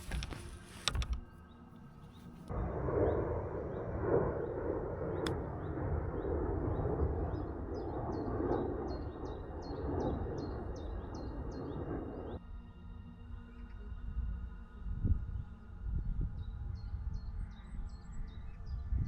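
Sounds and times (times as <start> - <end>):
wind rumbling on microphone: 0.0 - 19.0
bird chirping: 3.0 - 12.4.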